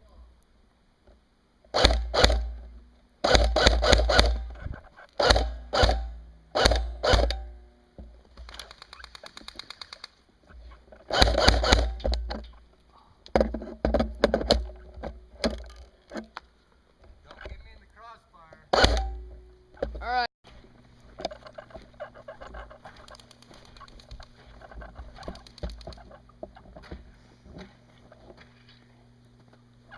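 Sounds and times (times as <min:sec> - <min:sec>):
airsoft rifle shots: 0:01.7 - 0:02.6, 0:03.2 - 0:04.6, 0:05.2 - 0:07.6, 0:11.1 - 0:12.4, 0:18.7 - 0:19.3
full-auto burst rattle: 0:01.7 - 0:02.6, 0:03.2 - 0:04.5, 0:05.2 - 0:07.5, 0:11.1 - 0:12.0, 0:18.7 - 0:19.2.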